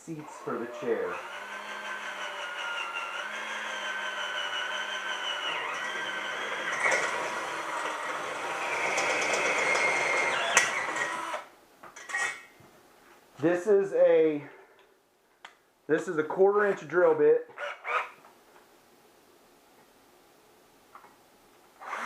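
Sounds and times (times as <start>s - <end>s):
electric drill whining: 0.2s - 11.5s, 17.6s - 18.2s, 21.8s - 22.0s.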